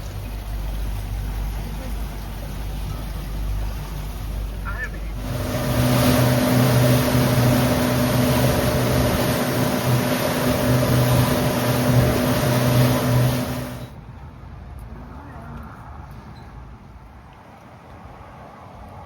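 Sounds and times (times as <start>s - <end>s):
engine running at speed: 0.0s - 14.0s
rush of wind: 5.0s - 19.0s.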